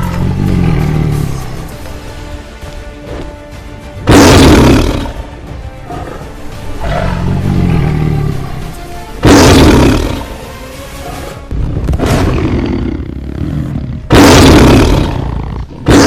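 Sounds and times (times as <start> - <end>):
tiger roaring: 0.0 - 1.4, 4.1 - 5.2, 5.8 - 10.4, 12.0 - 16.0
background music: 0.0 - 16.0.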